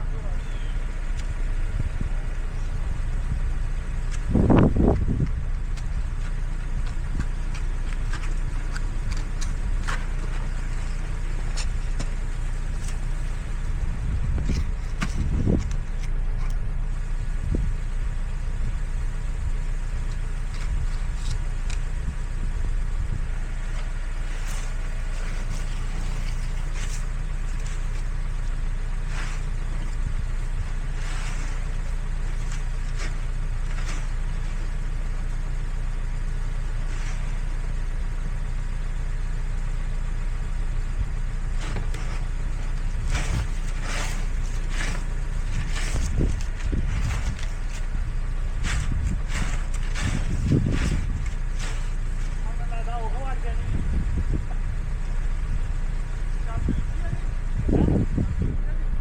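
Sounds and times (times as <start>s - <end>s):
car engine rumbling: 0.0s - 59.0s
short clicks and crunches: 41.6s - 52.4s.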